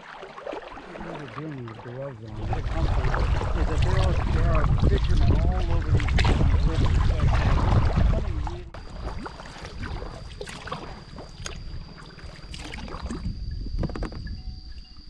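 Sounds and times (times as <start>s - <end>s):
kayak paddle splashing in water: 0.0s - 13.2s
wind rumbling on microphone: 2.3s - 15.0s
thin high-pitched whine: 8.4s - 15.0s.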